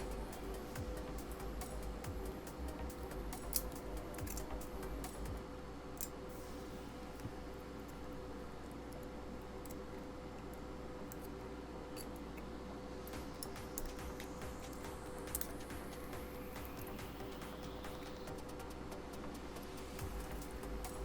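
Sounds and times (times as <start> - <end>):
faint steady hum: 0.0 - 21.0
tools clicking and scraping metal: 2.8 - 5.4, 13.1 - 15.8.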